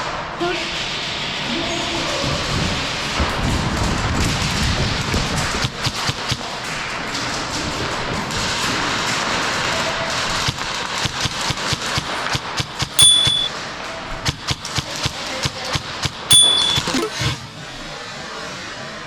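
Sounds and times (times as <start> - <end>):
pellet hits ringing: 11.5 - 13.5, 16.3 - 17.1.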